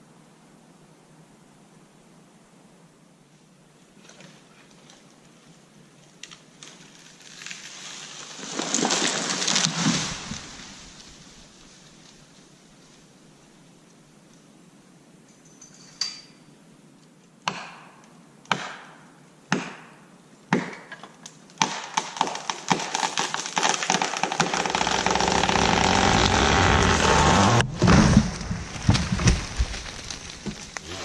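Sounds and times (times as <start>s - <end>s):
tree trunk cracking and crashing: 6.2s - 11.4s, 21.6s - 31.0s
axe strikes on wood: 17.5s - 17.9s, 18.5s - 18.9s, 19.5s - 19.9s, 20.5s - 20.9s
tree thumping on ground: 21.6s - 31.0s.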